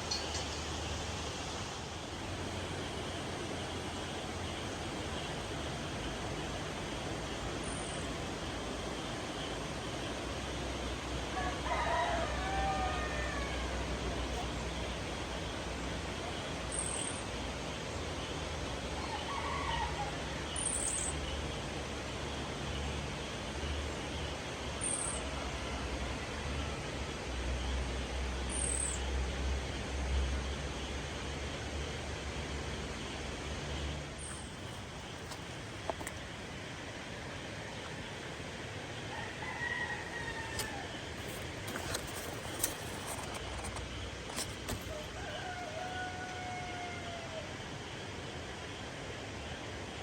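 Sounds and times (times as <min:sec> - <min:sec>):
steady background noise: 0:00.0 - 0:50.0
rooster crowing: 0:11.3 - 0:14.3, 0:19.0 - 0:20.4, 0:39.1 - 0:47.5.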